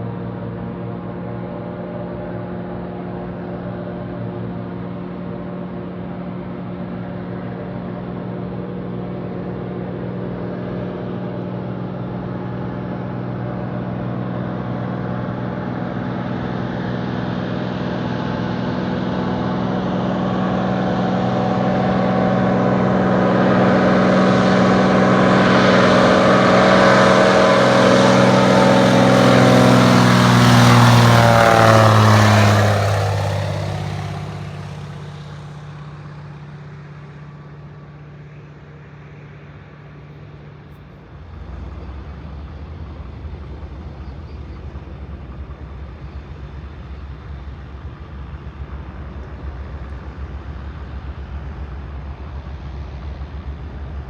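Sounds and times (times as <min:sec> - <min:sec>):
propeller plane engine drone: 0:00.0 - 0:54.0.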